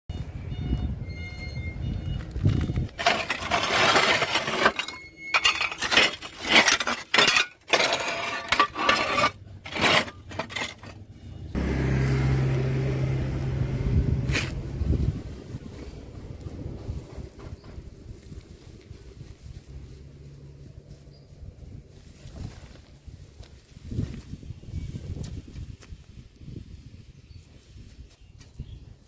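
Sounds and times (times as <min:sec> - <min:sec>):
metal scraping: 0:02.4 - 0:11.6.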